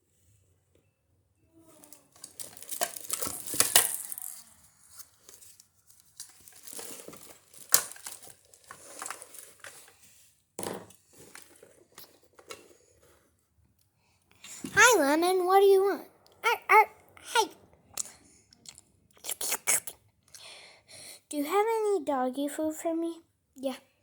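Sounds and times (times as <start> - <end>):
toys being rummaged: 1.8 - 13.0.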